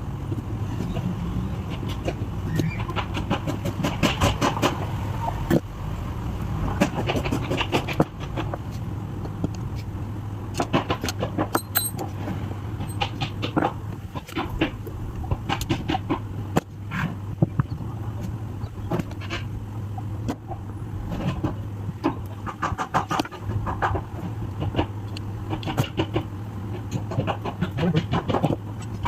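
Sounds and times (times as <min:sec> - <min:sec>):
tools clicking and clinking: 0:11.5 - 0:12.2, 0:12.8 - 0:13.1.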